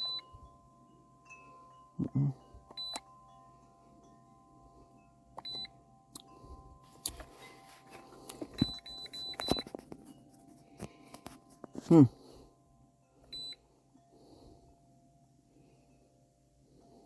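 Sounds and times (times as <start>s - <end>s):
electronic beeps from code reader: 0.0s - 0.3s, 2.7s - 3.0s, 5.4s - 5.7s, 8.6s - 9.7s, 13.3s - 13.6s.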